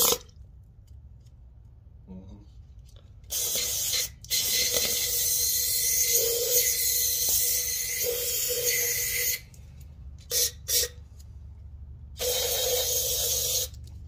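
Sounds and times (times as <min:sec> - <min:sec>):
aerosol can spraying: 0:03.3 - 0:09.4, 0:12.2 - 0:13.7.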